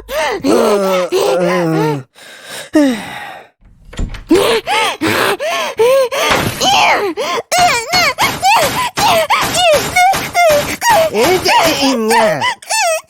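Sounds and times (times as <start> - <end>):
cartoon gibberish voices: 10.9 - 12.5.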